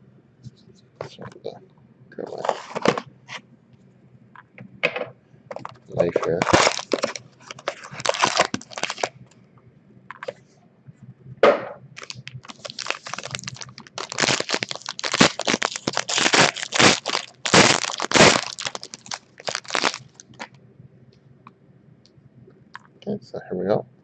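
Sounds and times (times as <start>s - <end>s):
plastic shrink wrap crinkling: 2.2s - 3.1s, 5.5s - 9.3s, 12.0s - 20.6s.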